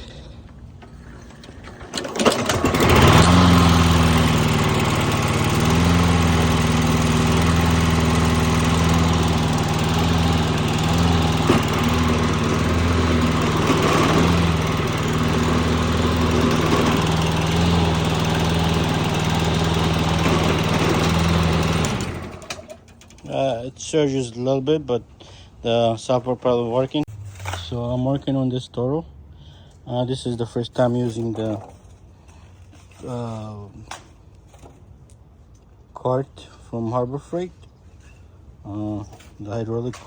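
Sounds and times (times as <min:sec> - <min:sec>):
lawn mower engine surging: 0:00.3 - 0:23.6.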